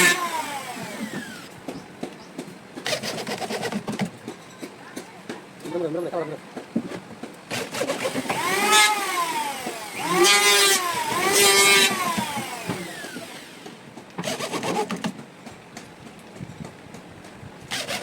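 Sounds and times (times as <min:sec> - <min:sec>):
engine revving: 0:07.9 - 0:13.6.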